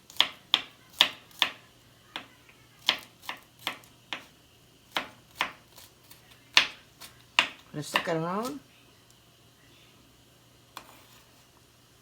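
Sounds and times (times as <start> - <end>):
knife chopping on cutting board: 0.1 - 1.6, 2.2 - 4.3, 4.9 - 8.6.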